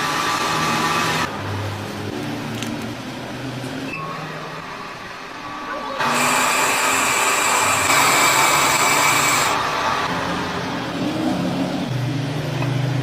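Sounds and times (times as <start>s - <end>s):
power tool motor whining: 6.0s - 9.6s.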